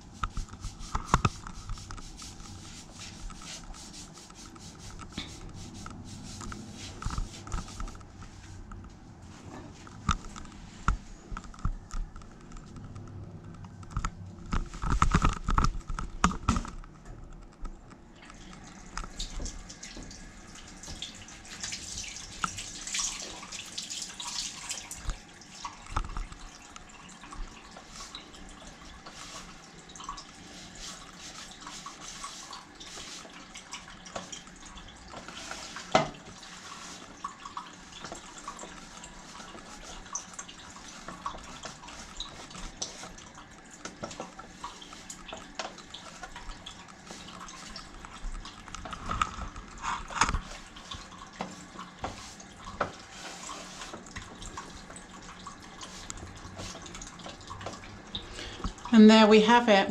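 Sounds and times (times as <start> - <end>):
water trickling at a sink: 0.0 - 59.9
clicks and knocks of handling: 4.5 - 19.6.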